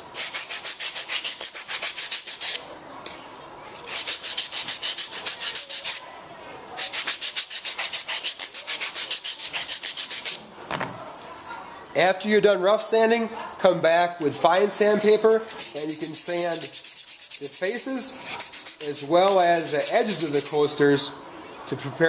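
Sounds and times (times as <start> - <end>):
sandpaper rubbing on wood: 0.2 - 2.6, 3.8 - 6.0, 6.8 - 10.4, 15.1 - 20.7.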